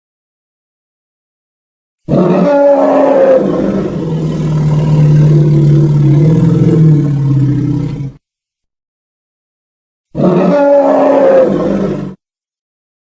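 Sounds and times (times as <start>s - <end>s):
deep creature roar: 2.1s - 8.2s, 10.2s - 12.2s.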